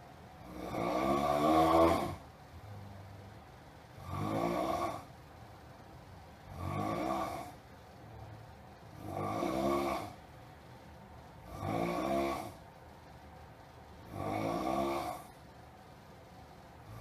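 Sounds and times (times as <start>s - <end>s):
person snoring: 0.4s - 2.2s, 4.0s - 5.1s, 6.5s - 7.6s, 9.0s - 10.2s, 11.5s - 12.6s, 14.1s - 15.4s.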